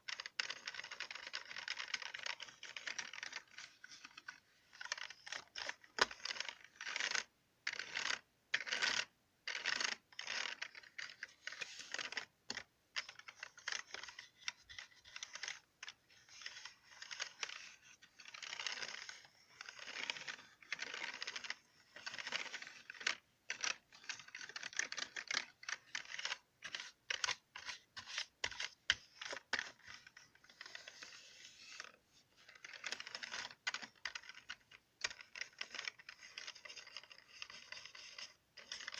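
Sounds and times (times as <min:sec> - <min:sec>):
computer keyboard typing: 0:00.1 - 0:04.1, 0:16.3 - 0:31.2, 0:32.5 - 0:38.9.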